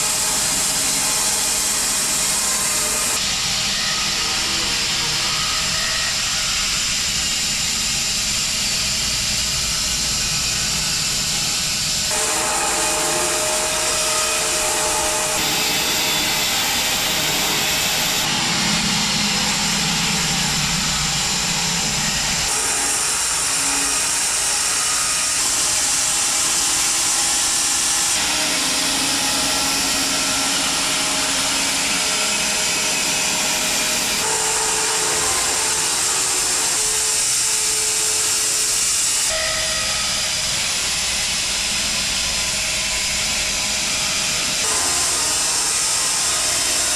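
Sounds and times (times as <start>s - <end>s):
bandsaw cutting log: 0.0s - 3.2s, 12.1s - 18.3s, 22.5s - 39.4s, 44.4s - 46.9s.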